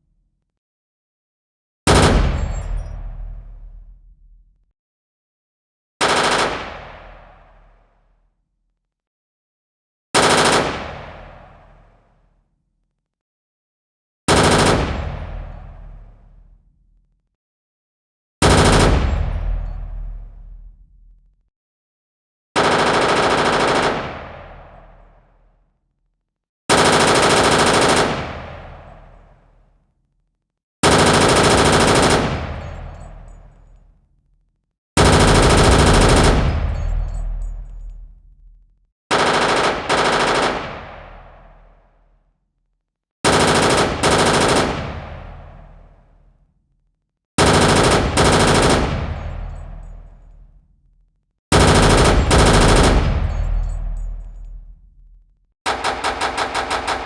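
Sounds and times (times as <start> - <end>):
rifle automatic fire bursts: 14.3 - 15.0, 22.6 - 24.0, 26.7 - 28.3, 30.8 - 32.9, 35.0 - 37.8, 39.1 - 40.8, 43.3 - 45.0, 47.4 - 49.6, 51.5 - 54.6, 55.7 - 57.0.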